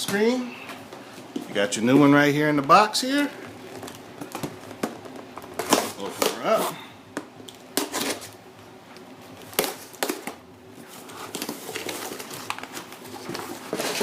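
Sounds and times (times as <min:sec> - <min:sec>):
packing rustling and crinkling: 0:10.8 - 0:14.0.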